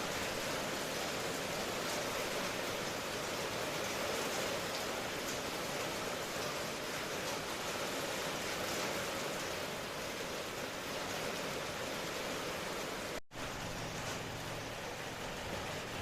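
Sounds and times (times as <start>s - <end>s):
rain falling: 0.0s - 16.0s.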